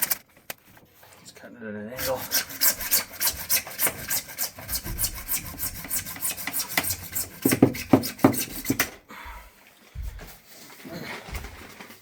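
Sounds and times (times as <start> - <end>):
hand saw cutting plastic pipe: 2.0 - 9.0.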